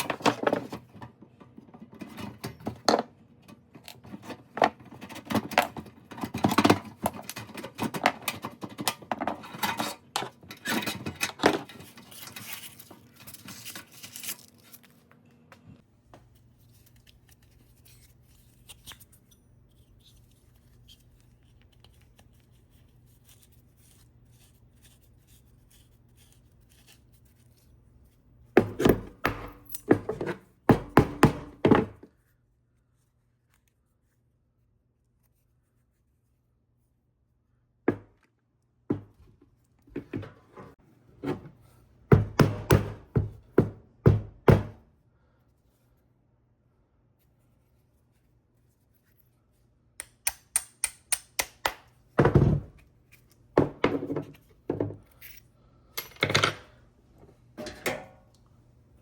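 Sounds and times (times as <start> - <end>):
hard objects knocking and clattering: 28.6 - 32.0, 53.6 - 55.0.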